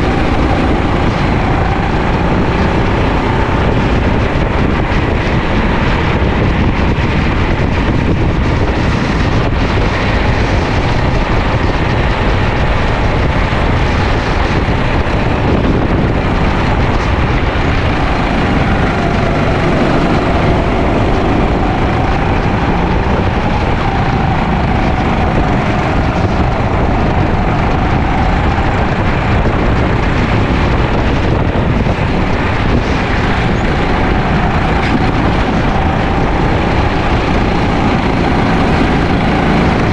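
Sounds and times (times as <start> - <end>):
kart engine revving: 0.0 - 39.9
wind buffeting microphone: 0.0 - 39.9.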